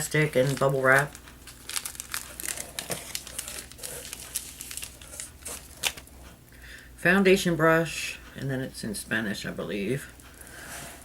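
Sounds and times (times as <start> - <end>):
plastic and bubble wrap crinkling: 0.0 - 6.1.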